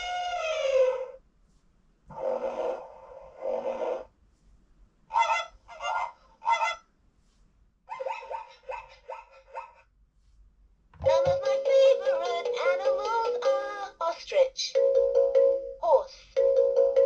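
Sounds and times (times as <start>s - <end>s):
animal calls from toy speaker: 0.0s - 1.2s, 5.1s - 6.8s, 7.9s - 9.8s.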